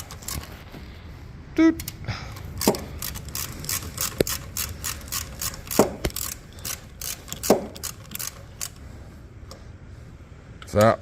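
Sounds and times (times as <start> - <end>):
ratchet wrench clicking: 0.0 - 0.6, 2.6 - 8.8.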